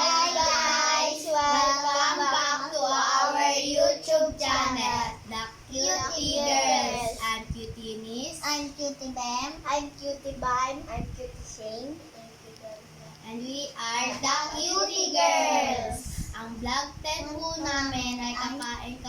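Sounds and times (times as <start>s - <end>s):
girls singing: 0.0s - 4.0s.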